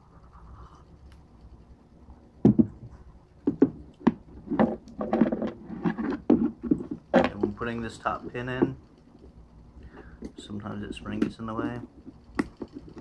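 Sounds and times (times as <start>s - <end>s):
small parts clicking and knocking: 3.4s - 13.0s.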